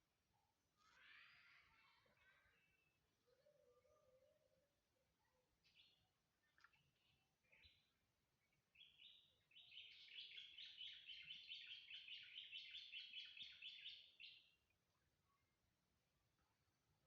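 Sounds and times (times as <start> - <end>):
bird chirping: 5.6 - 14.6.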